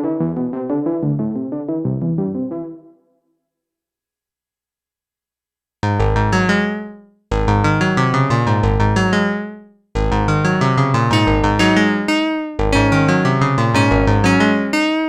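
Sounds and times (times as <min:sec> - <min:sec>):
synthesizer electric piano pattern: 0:00.0 - 0:03.0, 0:05.8 - 0:15.0.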